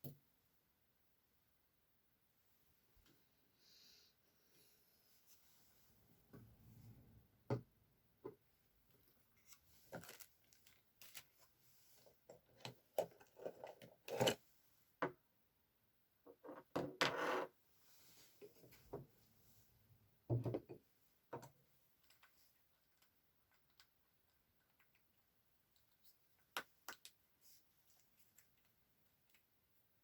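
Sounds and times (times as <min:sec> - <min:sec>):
paper rustling: 0:09.4 - 0:12.0
small objects clicking and tapping: 0:21.4 - 0:27.2.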